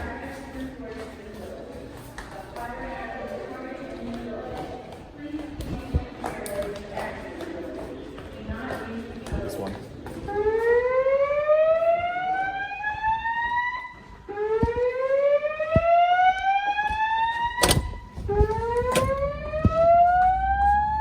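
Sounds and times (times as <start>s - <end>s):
fire alarm whoop tone: 10.3s - 21.0s.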